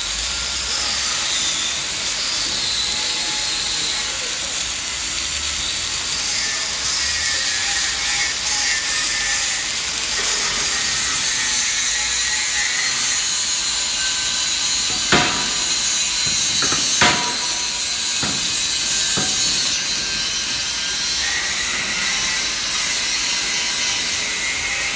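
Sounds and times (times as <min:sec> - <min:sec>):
welding arc crackling: 0:07.5 - 0:24.7
sharp knocks: 0:14.7 - 0:20.7.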